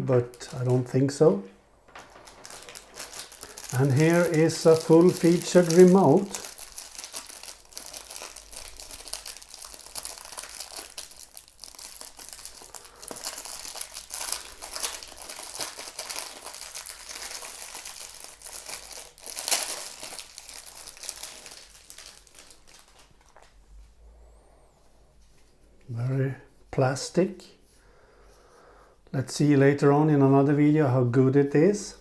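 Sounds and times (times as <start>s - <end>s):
plastic packaging crinkling: 0.2s - 23.8s.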